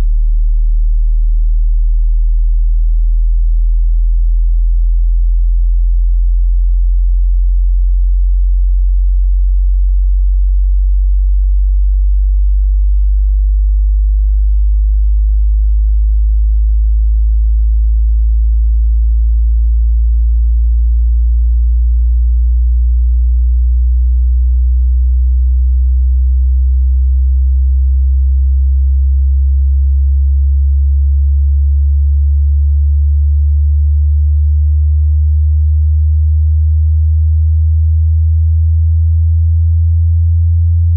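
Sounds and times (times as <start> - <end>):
sine tone rising in pitch: 0.0 - 40.9.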